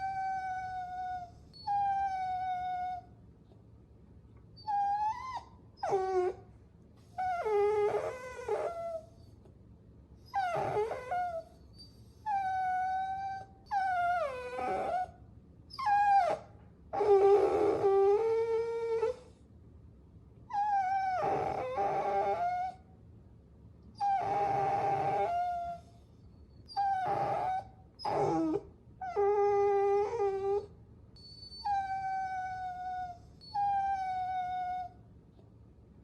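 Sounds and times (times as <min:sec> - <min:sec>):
puppy whimpering: 0:00.0 - 0:03.1, 0:04.6 - 0:06.4, 0:07.1 - 0:09.3, 0:10.3 - 0:19.3, 0:20.5 - 0:22.8, 0:24.0 - 0:25.9, 0:26.7 - 0:35.0.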